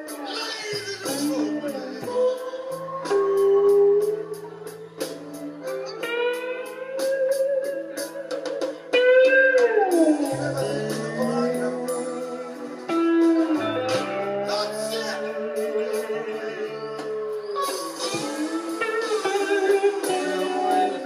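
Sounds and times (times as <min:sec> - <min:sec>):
slide guitar blues riff: 0:00.0 - 0:21.0.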